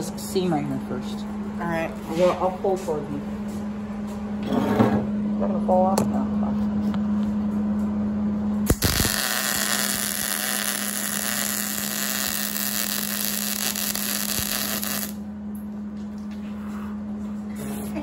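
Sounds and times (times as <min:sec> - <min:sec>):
steady low hum: 0:00.0 - 0:18.0
welding arc crackling sizzle: 0:08.6 - 0:15.3.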